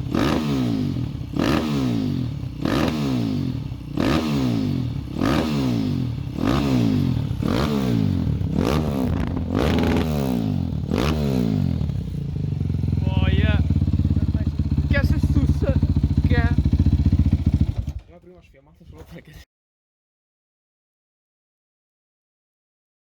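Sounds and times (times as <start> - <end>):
motorcycle engine revving and idling: 0.0 - 18.2.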